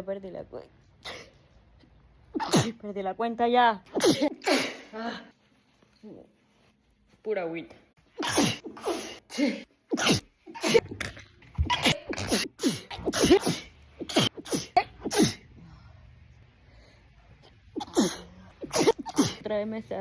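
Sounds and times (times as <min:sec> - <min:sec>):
woman sneezing: 0:01.0 - 0:01.4, 0:02.3 - 0:02.8, 0:03.9 - 0:05.3, 0:08.2 - 0:11.0, 0:11.6 - 0:15.5, 0:17.7 - 0:19.5.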